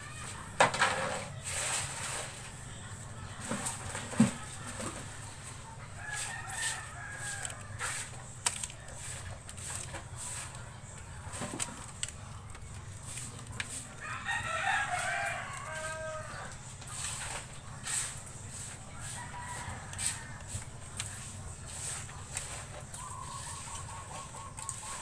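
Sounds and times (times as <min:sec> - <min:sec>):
plastic bottles being cut: 0:03.2 - 0:25.0
rooster crowing: 0:05.9 - 0:08.1, 0:14.0 - 0:16.6, 0:19.0 - 0:20.7.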